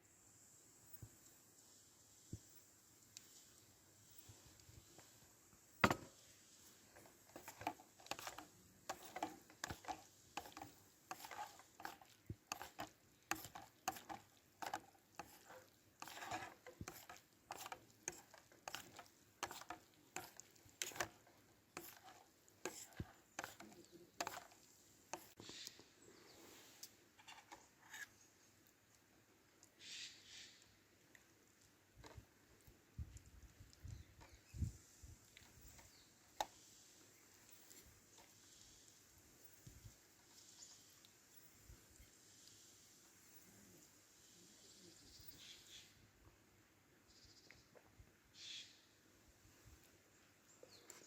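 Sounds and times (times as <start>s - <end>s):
objects knocking and scraping: 5.8s - 6.2s, 6.9s - 24.6s.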